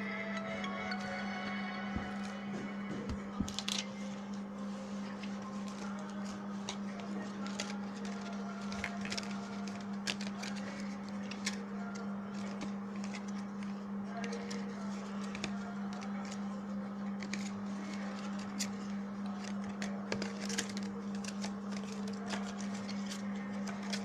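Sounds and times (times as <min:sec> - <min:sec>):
low electrical hum: 0:00.0 - 0:24.0
phone and packaging handled: 0:01.9 - 0:04.4.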